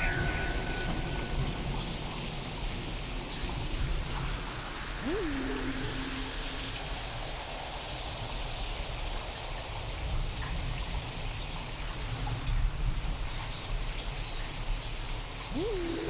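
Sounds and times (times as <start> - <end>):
heavy rain hissing: 3.8 - 8.2, 15.5 - 16.0.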